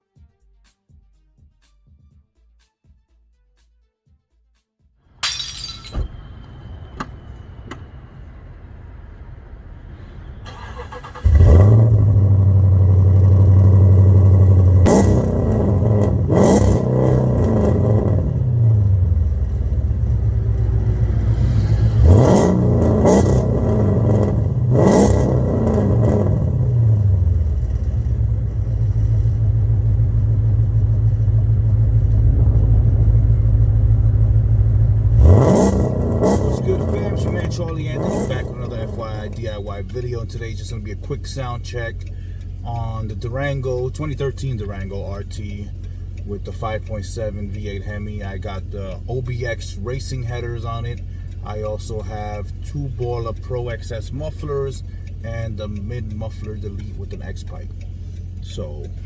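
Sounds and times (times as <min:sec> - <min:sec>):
car engine revving: 0:08.5 - 0:59.0.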